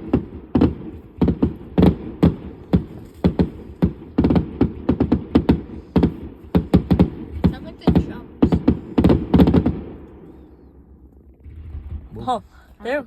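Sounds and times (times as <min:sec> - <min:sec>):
firework shells bursting: 0:00.0 - 0:12.6
low rumble: 0:09.7 - 0:13.0.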